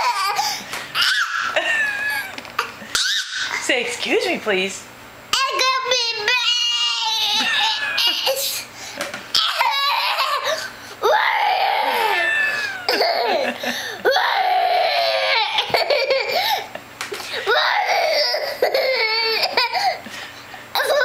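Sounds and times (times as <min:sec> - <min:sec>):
young child laughing and squealing: 0:01.0 - 0:03.6, 0:06.3 - 0:08.7, 0:09.4 - 0:16.7, 0:20.8 - 0:21.0.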